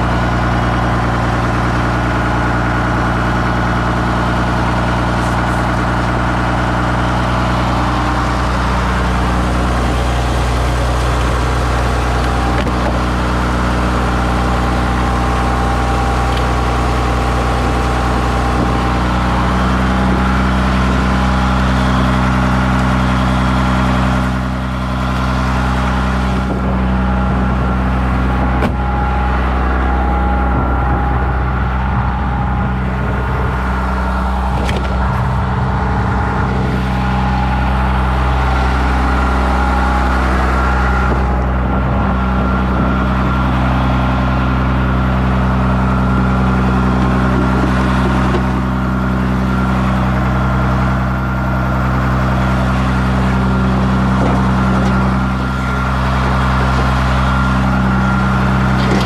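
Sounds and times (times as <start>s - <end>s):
engine idling: 0.0s - 59.0s.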